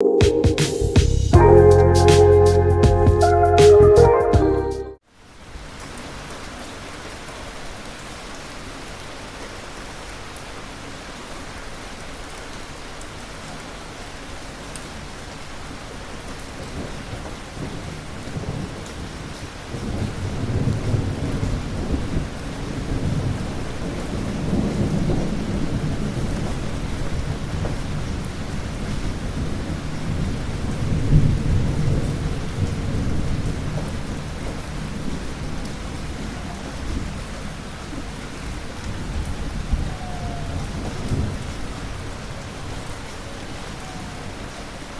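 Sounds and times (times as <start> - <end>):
steady rain falling: 5.0 - 44.9
rolling thunder: 16.6 - 43.0.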